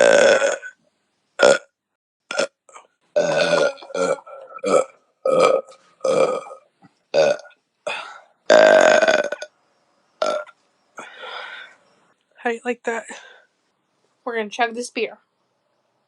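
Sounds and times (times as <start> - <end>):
woman belching: 0.0 - 0.8, 3.2 - 7.5, 8.5 - 9.5, 10.2 - 10.5.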